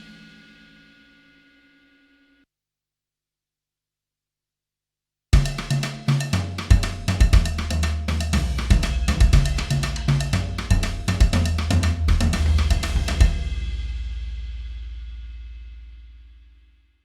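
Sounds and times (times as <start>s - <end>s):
rock drum kit groove: 5.4s - 13.8s
low bass line: 6.7s - 16.4s.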